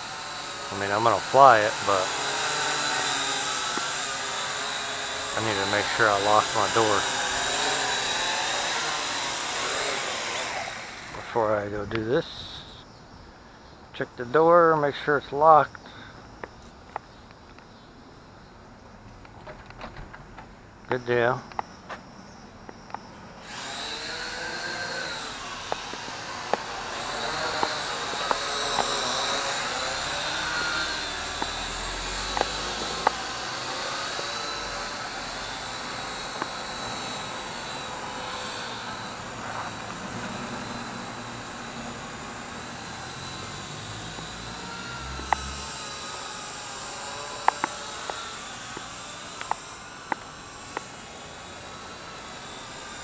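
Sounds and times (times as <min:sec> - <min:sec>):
drone motors whining: 0:00.0 - 0:12.8, 0:22.7 - 0:53.0
sharp clicks: 0:23.9 - 0:29.8, 0:30.4 - 0:33.3, 0:35.7 - 0:36.8, 0:46.8 - 0:50.9.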